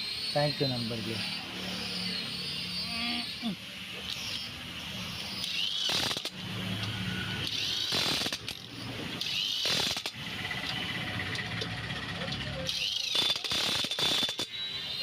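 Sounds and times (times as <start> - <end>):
ratchet wrench clicking: 5.3 - 14.5.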